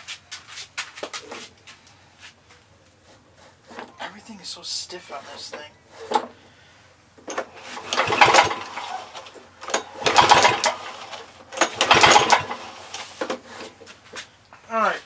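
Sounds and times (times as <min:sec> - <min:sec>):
recoil pull-starter: 0:07.2 - 0:13.7
mower engine cranking without starting: 0:07.2 - 0:13.8.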